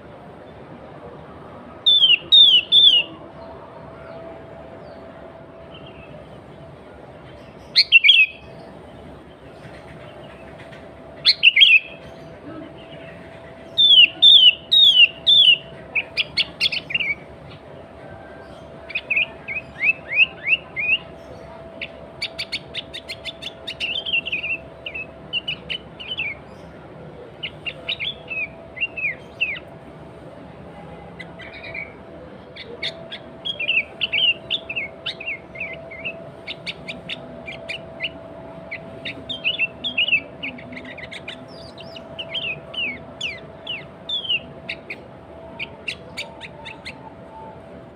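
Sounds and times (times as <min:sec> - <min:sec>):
faint steady hum: 0:00.0 - 0:47.9
bulbul singing chirpy notes: 0:31.2 - 0:47.9.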